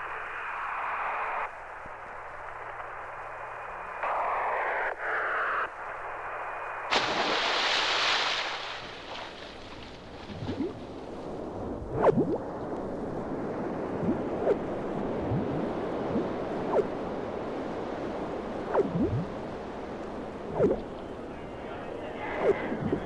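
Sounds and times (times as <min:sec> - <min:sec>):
radio static hiss: 0:00.0 - 0:07.5, 0:12.5 - 0:23.0
loud rush of noise: 0:03.3 - 0:07.5
wet squelching glides: 0:06.9 - 0:11.2.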